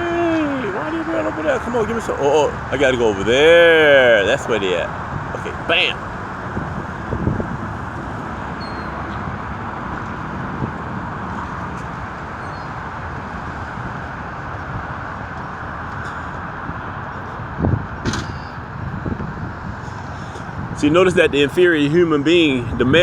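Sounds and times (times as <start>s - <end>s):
road traffic noise: 0.0s - 23.0s
faint bird chirps: 8.6s - 9.0s.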